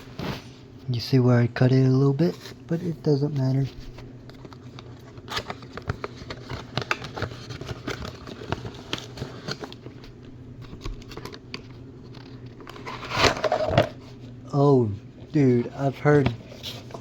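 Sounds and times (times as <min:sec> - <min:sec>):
cardboard packaging clicks and rustles: 0:03.4 - 0:14.2.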